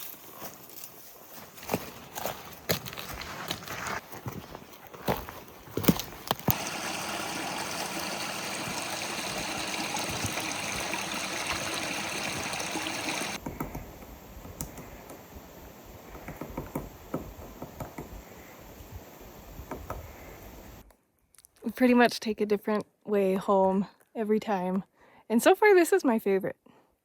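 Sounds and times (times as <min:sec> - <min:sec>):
mountain stream rushing: 0:06.3 - 0:13.4.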